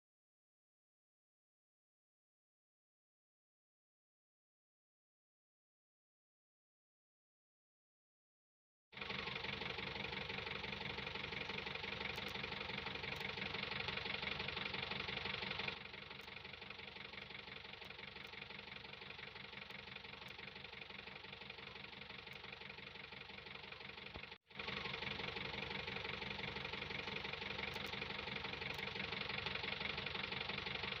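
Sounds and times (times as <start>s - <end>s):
diesel engine idling: 9.0s - 31.0s.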